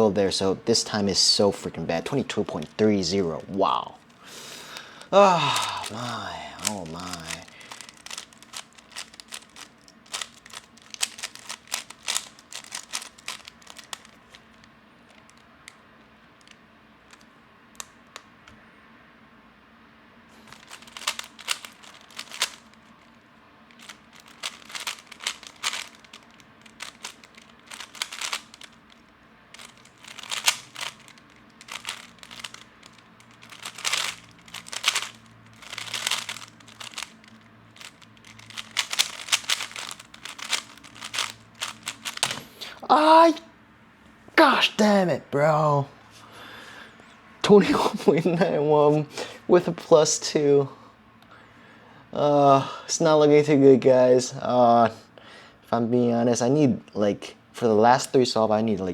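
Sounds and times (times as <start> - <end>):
puzzle cube clicking as turned: 4.7 - 15.8, 16.4 - 18.3, 20.4 - 42.4.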